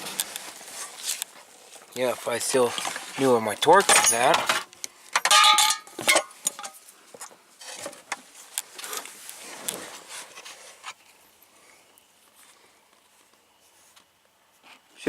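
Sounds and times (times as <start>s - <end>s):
hand tools clinking and rustling: 0.0s - 11.5s.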